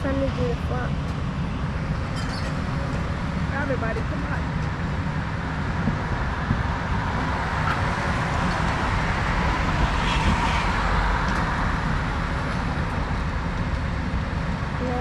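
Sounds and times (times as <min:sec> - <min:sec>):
excavator diesel engine running: 0:00.0 - 0:15.0.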